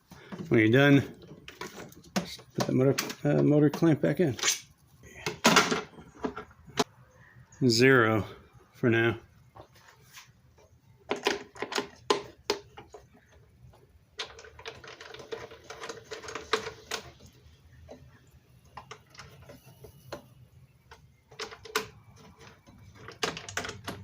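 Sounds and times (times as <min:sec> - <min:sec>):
parts rattling: 0:00.1 - 0:06.8, 0:11.1 - 0:18.1, 0:20.9 - 0:24.0
router table parts clicking and knocking: 0:20.9 - 0:24.0.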